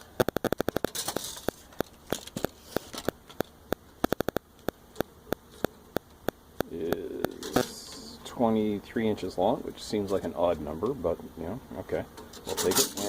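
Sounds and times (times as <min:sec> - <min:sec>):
audio crackle clicks: 0:00.0 - 0:07.6
faint hiss: 0:02.4 - 0:13.0.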